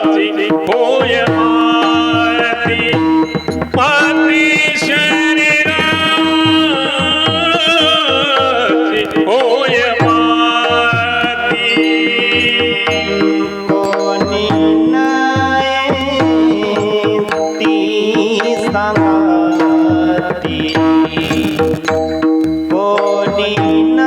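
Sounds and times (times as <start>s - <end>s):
hand drum rhythm: 0.0s - 24.0s
person singing devotional melody: 0.0s - 24.0s.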